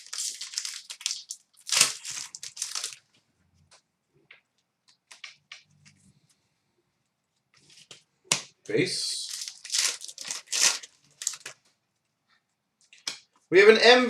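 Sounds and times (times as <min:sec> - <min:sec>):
foil wrapper tearing and crinkling: 0:00.0 - 0:03.0, 0:09.2 - 0:11.6.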